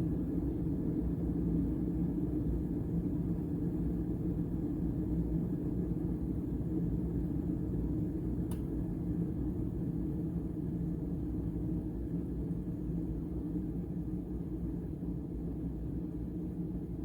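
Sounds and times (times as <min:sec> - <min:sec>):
faint tick: 0:08.5 - 0:08.7.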